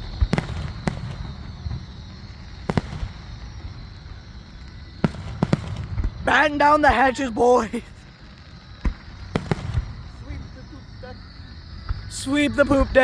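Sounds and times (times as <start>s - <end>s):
fireworks bangs: 0.0s - 1.8s, 2.7s - 3.4s, 5.0s - 8.0s, 8.8s - 10.5s
low rumble of fireworks display: 0.0s - 13.0s.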